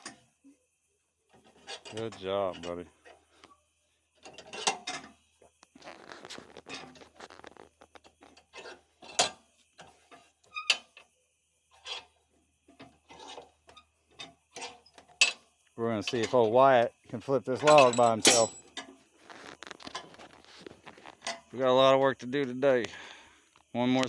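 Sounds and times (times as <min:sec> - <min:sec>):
metal clicks clanks and rattles: 0:01.4 - 0:03.2, 0:04.2 - 0:05.2, 0:07.8 - 0:10.0, 0:12.7 - 0:15.4, 0:17.5 - 0:19.0.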